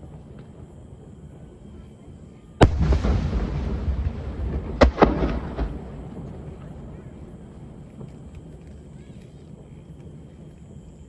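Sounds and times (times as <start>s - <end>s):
fireworks bursting: 0.0s - 11.0s
rumbling echo: 2.6s - 8.4s.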